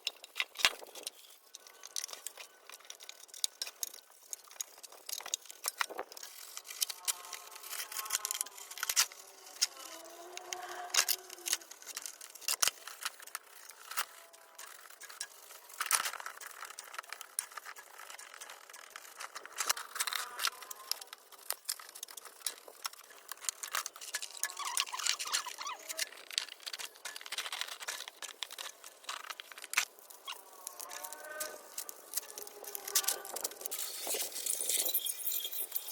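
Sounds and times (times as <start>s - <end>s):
small parts and tools clicking: 0.0s - 35.9s.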